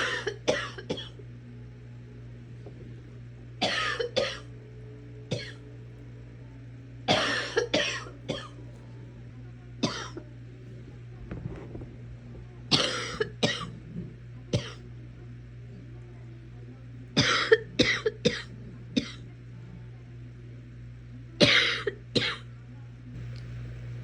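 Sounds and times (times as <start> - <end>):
person coughing harshly: 0.0 - 1.2, 3.6 - 4.5, 7.1 - 8.5, 9.8 - 10.2, 12.7 - 13.8, 14.5 - 14.8, 17.2 - 19.2, 21.4 - 22.5
steady low hum: 0.0 - 24.0.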